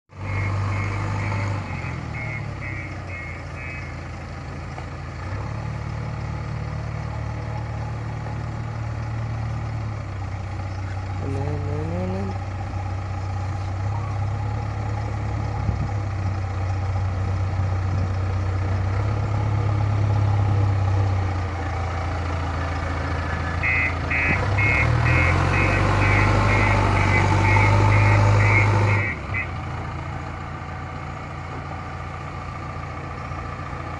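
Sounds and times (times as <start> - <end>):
diesel engine running: 0.1 - 33.9
reversing alarm beeping: 0.2 - 3.9, 23.4 - 29.6.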